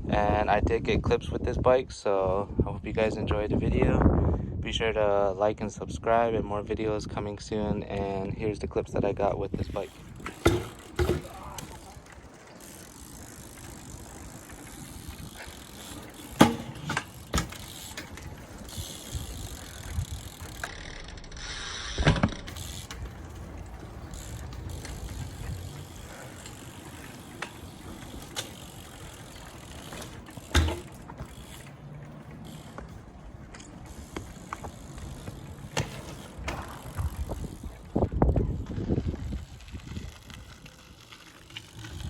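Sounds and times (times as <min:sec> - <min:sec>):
bike tyres rolling with clicking: 0:09.2 - 0:42.0
bike landing knocks: 0:09.6 - 0:20.8, 0:22.0 - 0:37.9.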